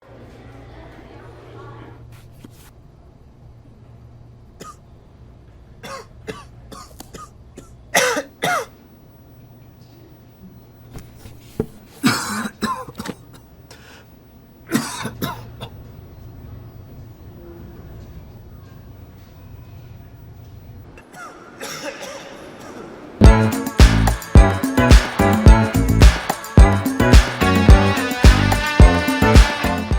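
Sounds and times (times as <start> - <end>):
person coughing: 4.6 - 4.8, 5.8 - 8.8, 12.0 - 13.4, 14.7 - 15.7, 21.0 - 23.0
throat clearing: 4.6 - 4.8, 12.0 - 13.5, 14.7 - 15.8, 21.0 - 23.0.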